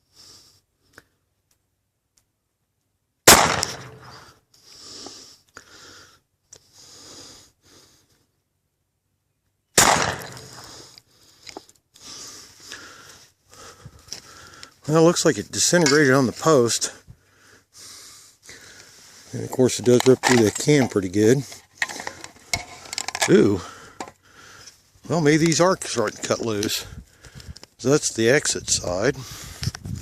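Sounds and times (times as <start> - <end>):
pistol shots: 3.3 - 4.3, 9.8 - 10.7.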